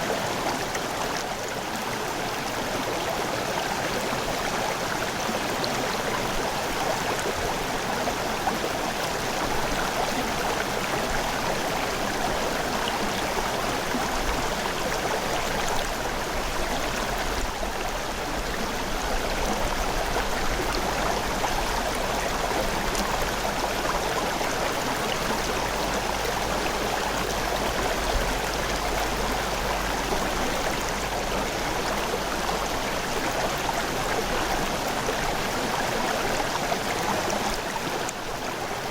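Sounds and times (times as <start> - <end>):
river water over rocks: 0.0 - 38.9.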